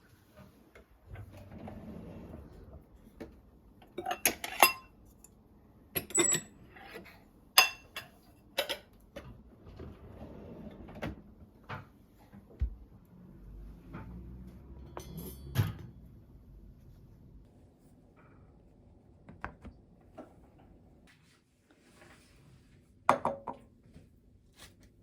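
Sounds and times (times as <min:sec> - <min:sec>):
dishes and utensils clinking: 0:04.0 - 0:04.9, 0:07.6 - 0:08.9, 0:14.8 - 0:15.9.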